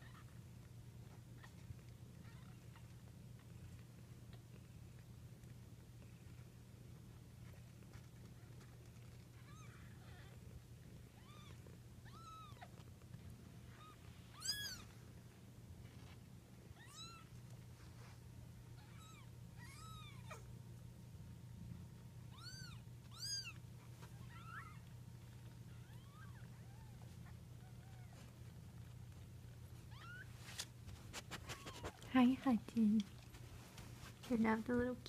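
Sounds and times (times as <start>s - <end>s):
steady low hum: 0.0s - 35.0s
kittens meowing: 9.4s - 10.5s, 11.2s - 12.8s, 13.7s - 14.9s, 16.8s - 17.3s, 18.8s - 20.5s, 22.3s - 23.6s, 24.2s - 24.9s, 25.7s - 28.2s.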